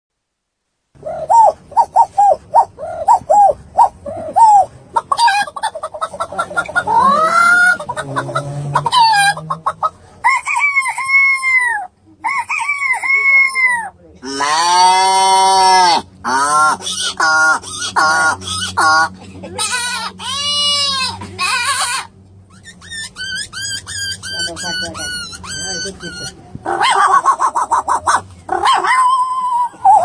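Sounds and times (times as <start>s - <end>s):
chicken squawking: 1.0s - 30.0s
chicken clucking: 1.3s - 10.6s.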